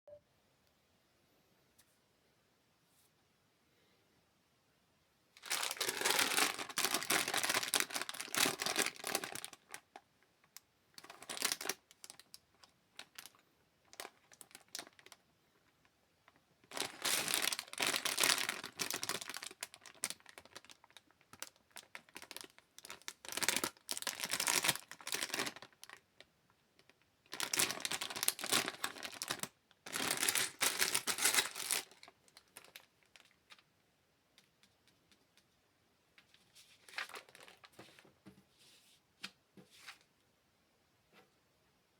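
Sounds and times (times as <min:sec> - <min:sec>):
packaging crinkling and tearing: 0:05.4 - 0:10.0, 0:11.0 - 0:15.2, 0:16.3 - 0:33.6, 0:36.8 - 0:37.7.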